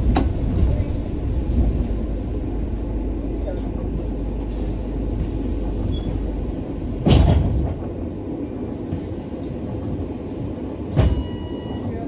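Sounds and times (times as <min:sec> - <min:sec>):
bus engine and road rumble: 0:00.0 - 0:12.0.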